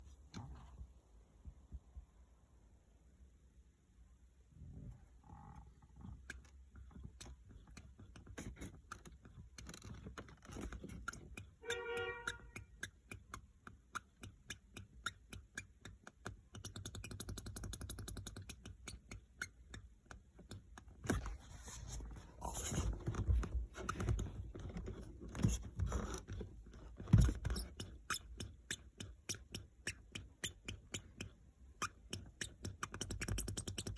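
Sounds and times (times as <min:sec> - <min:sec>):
dashboard panel creaking and ticking: 0:05.4 - 0:21.4, 0:22.1 - 0:33.9
short squeak: 0:10.8 - 0:13.0.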